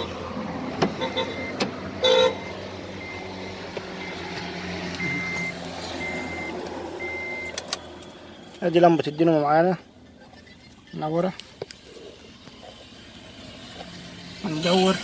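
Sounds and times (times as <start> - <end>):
car warning chime beeping: 0.9 - 9.7.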